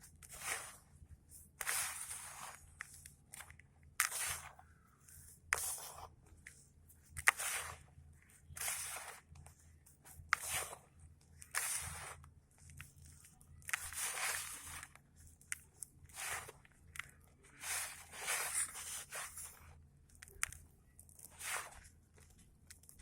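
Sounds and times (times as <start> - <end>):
sand crumbling and crunching: 0.3 - 0.8, 1.6 - 2.6, 4.0 - 4.6, 7.2 - 7.9, 8.5 - 9.3, 10.3 - 10.8, 11.5 - 12.2, 13.7 - 14.9, 16.1 - 16.6, 17.6 - 19.7, 21.2 - 21.9.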